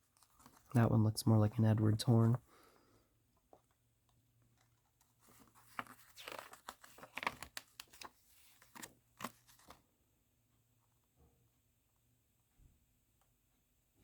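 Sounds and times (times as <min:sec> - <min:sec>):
paper rustling and crinkling: 0:00.0 - 0:00.8, 0:04.4 - 0:09.8.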